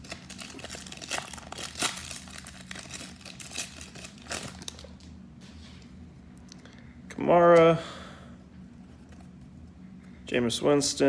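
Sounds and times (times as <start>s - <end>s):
plastic packaging crinkling: 0.0s - 5.1s.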